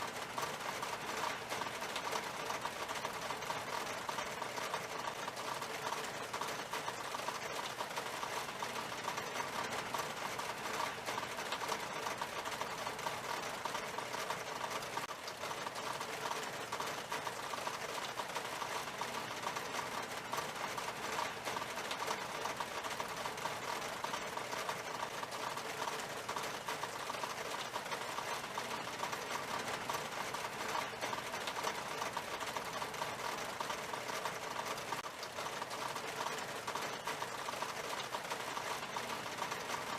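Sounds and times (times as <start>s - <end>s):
rain on window glass: 0.0s - 39.9s.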